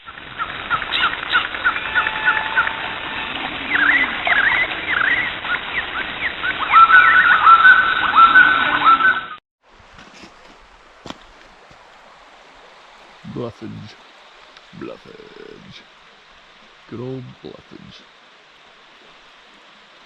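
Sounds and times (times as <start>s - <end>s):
steady hiss: 10.4s - 20.0s.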